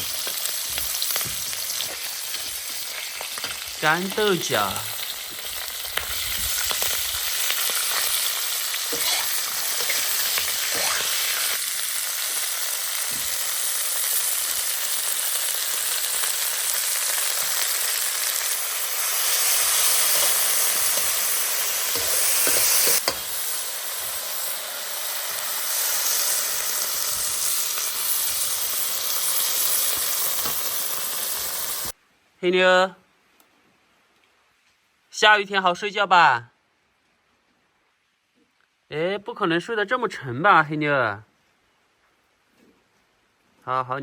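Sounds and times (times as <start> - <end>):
food sizzling in a pan: 0.0 - 32.0
light scrapes in pan: 8.9 - 10.1.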